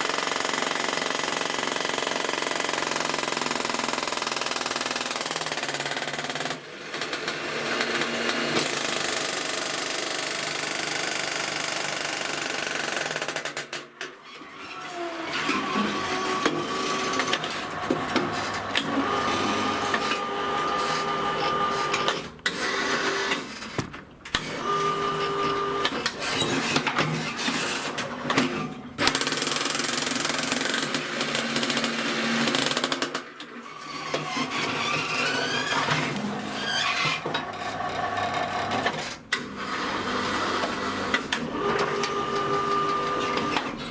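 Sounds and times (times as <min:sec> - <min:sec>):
jackhammer rattling: 0:00.0 - 0:13.9, 0:29.0 - 0:33.3.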